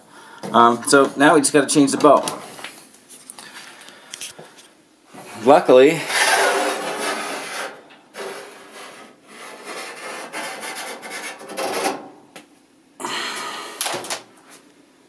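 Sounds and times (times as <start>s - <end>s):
rubbing and scraping handling noises: 0.4s - 12.0s.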